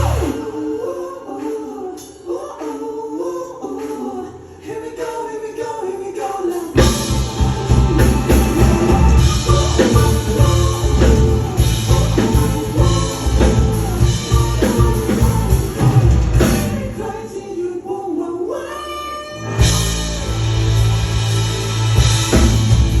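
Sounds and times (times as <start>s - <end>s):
live band playing: 0.0s - 0.6s, 6.8s - 17.2s, 19.4s - 23.0s
person singing: 0.0s - 19.7s.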